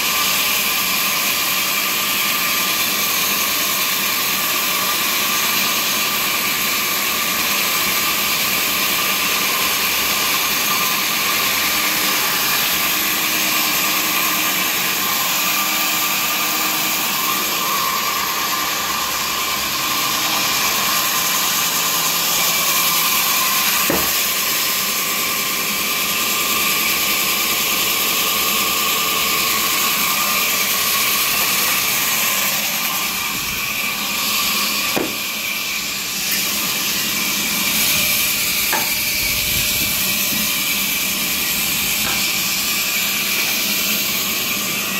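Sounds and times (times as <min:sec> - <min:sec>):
sawmill machinery humming: 0:00.0 - 0:44.9
brief knock: 0:23.9 - 0:24.2, 0:35.0 - 0:35.2.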